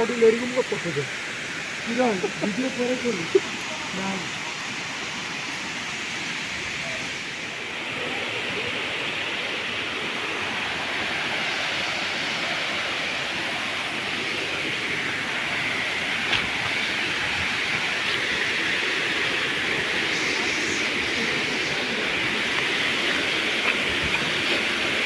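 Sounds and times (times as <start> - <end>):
waterfall pouring: 12.6 - 25.0.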